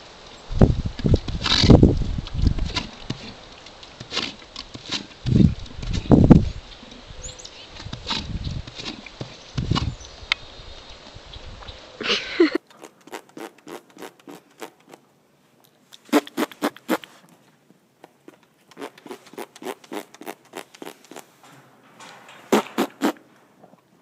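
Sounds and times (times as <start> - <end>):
horse smacking its lips: 1.1 - 6.0, 12.6 - 15.0, 15.9 - 17.4, 18.2 - 21.3, 22.5 - 23.9.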